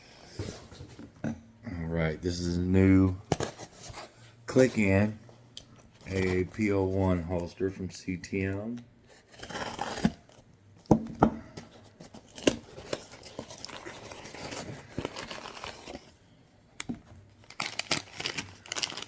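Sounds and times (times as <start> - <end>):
plastic bag crinkling and tearing: 12.2 - 16.1, 17.4 - 19.0.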